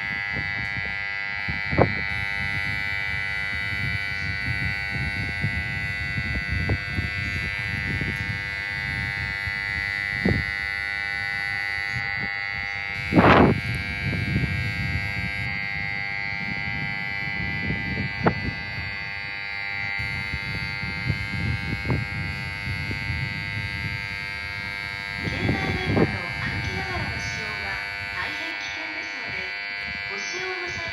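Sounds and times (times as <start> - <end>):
alarm buzzer: 0.0 - 30.9.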